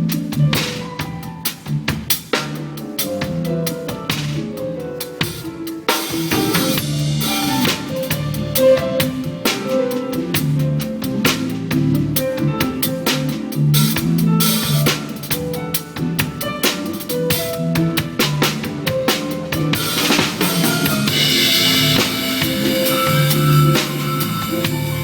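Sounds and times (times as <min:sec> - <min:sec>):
backing track bass and melody: 0:00.0 - 0:25.0
drum kit playing: 0:00.0 - 0:25.0
cymbal crash ringing: 0:19.9 - 0:25.0.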